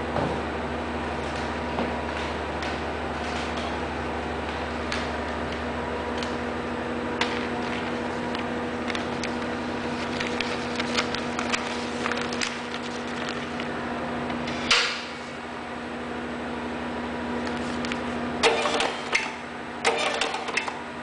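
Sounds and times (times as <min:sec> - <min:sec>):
printer mechanical hum: 0:00.0 - 0:21.0
printer loud clack: 0:18.4 - 0:20.8.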